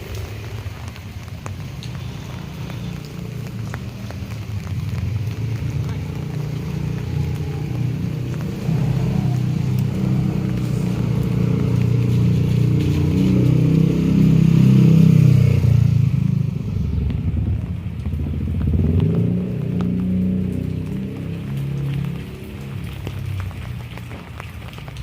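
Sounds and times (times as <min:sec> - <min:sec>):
vehicle engine passing by: 0:04.3 - 0:24.2.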